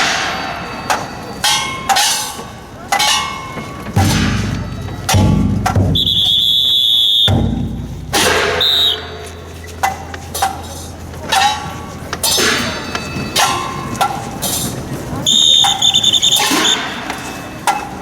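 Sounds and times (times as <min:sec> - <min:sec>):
whistle blast: 0:05.9 - 0:07.6, 0:08.4 - 0:09.3, 0:15.2 - 0:17.0
sharp loud hits: 0:07.3 - 0:09.4.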